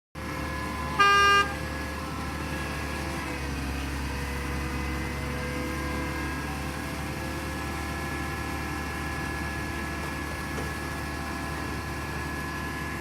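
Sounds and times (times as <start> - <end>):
truck engine running: 0.2 - 13.0
truck horn: 0.8 - 1.8.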